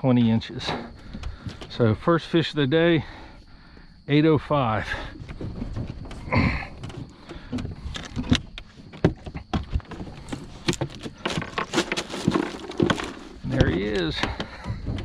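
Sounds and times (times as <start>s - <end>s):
gear clicking and rattling: 5.2s - 15.0s.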